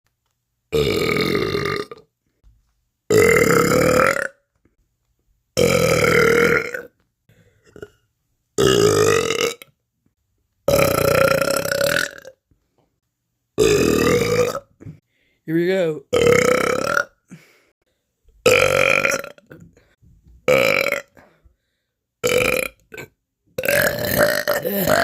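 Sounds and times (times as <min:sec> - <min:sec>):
person burping: 0:00.7 - 0:02.1, 0:03.1 - 0:04.4, 0:05.6 - 0:08.0, 0:08.6 - 0:09.7, 0:10.7 - 0:12.4, 0:13.6 - 0:15.0, 0:16.1 - 0:17.6, 0:18.4 - 0:21.4, 0:22.2 - 0:25.0.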